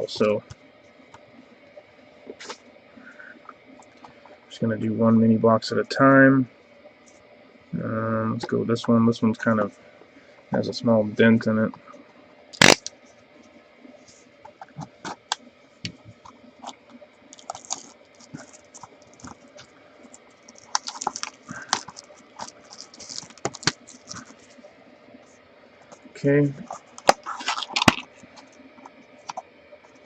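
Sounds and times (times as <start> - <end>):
cardboard and wrapping rustling: 17.4 - 19.4, 20.5 - 24.5, 27.0 - 28.0.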